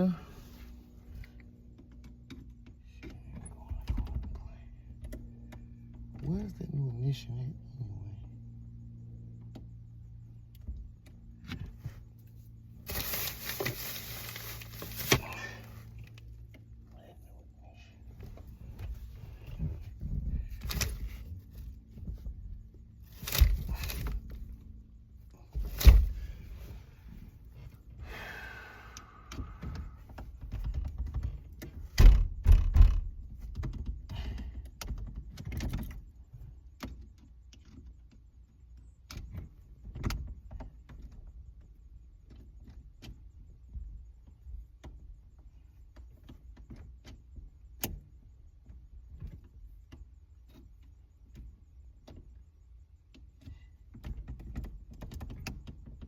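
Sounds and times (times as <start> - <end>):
hand tools and metal parts clattering: 12.8 - 16.6.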